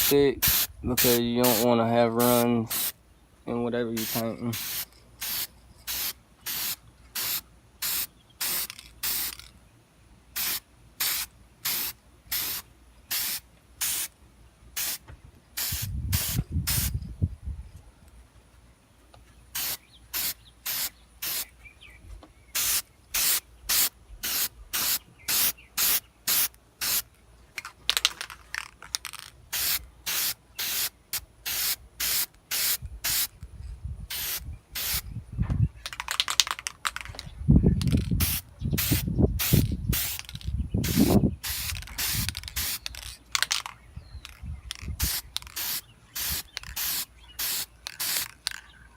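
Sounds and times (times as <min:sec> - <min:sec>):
spray can hissing bursts: 0:00.0 - 0:03.0, 0:04.0 - 0:09.5, 0:10.4 - 0:14.1, 0:14.8 - 0:15.0, 0:15.6 - 0:16.9, 0:19.6 - 0:21.5, 0:22.6 - 0:27.0, 0:29.5 - 0:33.3, 0:34.1 - 0:35.0, 0:38.2 - 0:43.1, 0:45.0 - 0:48.5.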